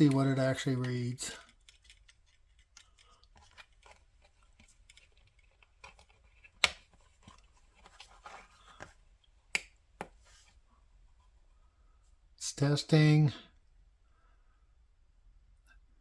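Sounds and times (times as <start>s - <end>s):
test clips clicking and tapping: 0.0s - 7.5s.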